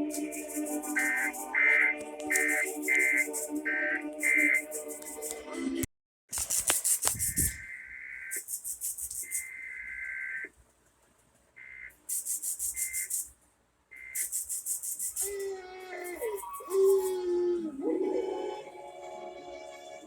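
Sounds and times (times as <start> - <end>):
buzzy warbling data bursts: 0.0 - 5.5, 6.5 - 10.5, 11.6 - 13.3, 14.0 - 15.4.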